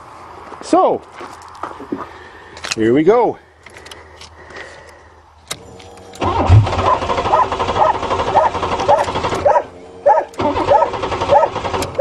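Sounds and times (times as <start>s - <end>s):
car starter cranking: 5.5s - 12.0s.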